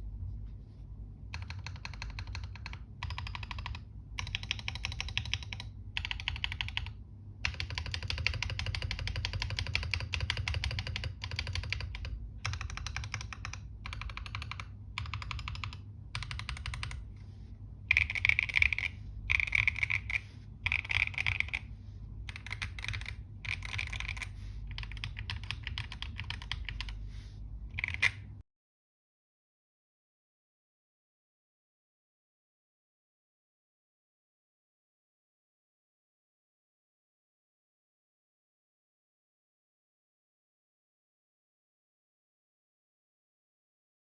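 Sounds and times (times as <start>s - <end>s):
fast mechanical keyboard typing: 1.4s - 17.1s, 17.9s - 27.0s, 27.7s - 28.3s.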